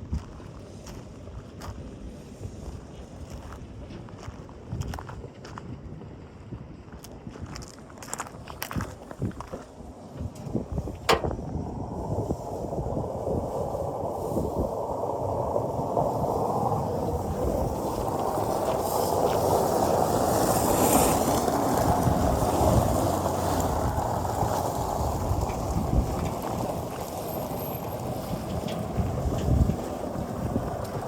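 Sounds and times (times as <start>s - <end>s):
tractor diesel engine running: 10.2s - 11.9s, 15.2s - 31.0s.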